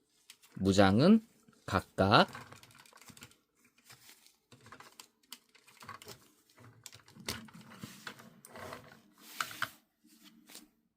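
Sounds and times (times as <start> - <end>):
plastic toy parts clicking: 2.3 - 3.5.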